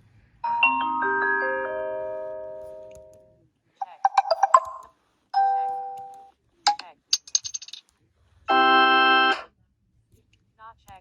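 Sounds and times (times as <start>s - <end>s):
notification chime: 3.8s - 4.8s.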